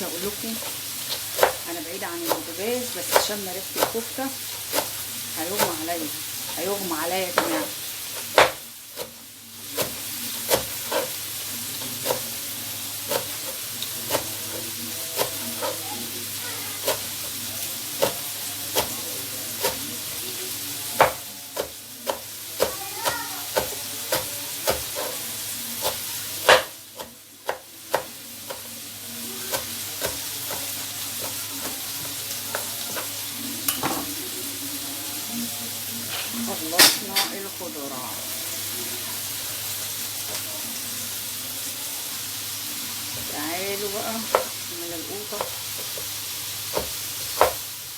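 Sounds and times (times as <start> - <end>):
knife chopping on cutting board: 0.6 - 1.6, 2.2 - 4.1, 4.7 - 5.0, 7.3 - 9.1, 9.8 - 11.2, 16.8 - 17.2, 17.9 - 19.9, 21.0 - 25.2, 25.8 - 28.7, 29.5 - 33.1, 46.7 - 47.6.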